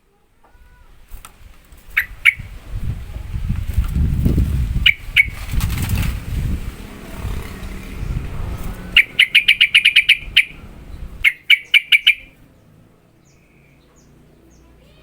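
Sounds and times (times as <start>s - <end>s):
low fluttering rumble: 1.1s - 11.4s
bird giving sharp calls: 1.8s - 2.9s, 4.7s - 12.5s.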